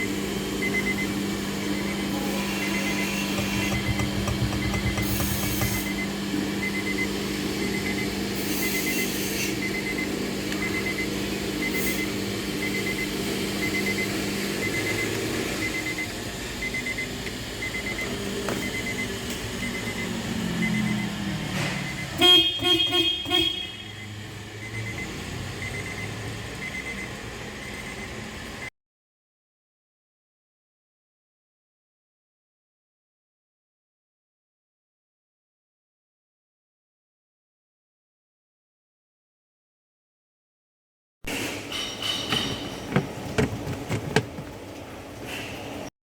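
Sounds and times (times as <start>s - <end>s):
car horn toots: 2.1s - 5.9s, 22.2s - 24.1s.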